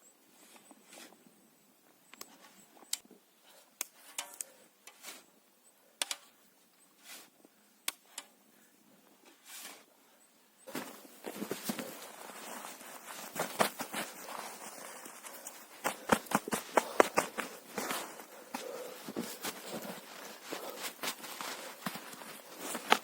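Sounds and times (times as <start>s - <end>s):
soft rustling swishes: 9.2s - 9.9s, 10.7s - 23.0s.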